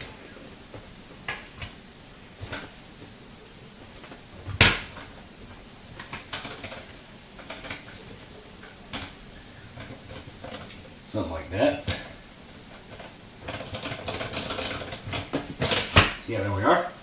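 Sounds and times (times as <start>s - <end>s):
plastic parts clicking and knocking: 3.8s - 10.9s, 11.8s - 16.2s.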